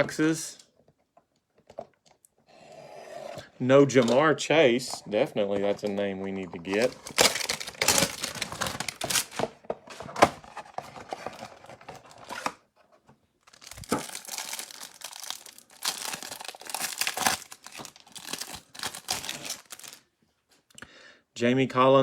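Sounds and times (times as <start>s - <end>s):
cardboard tearing and rustling: 6.7s - 12.6s, 13.4s - 20.0s.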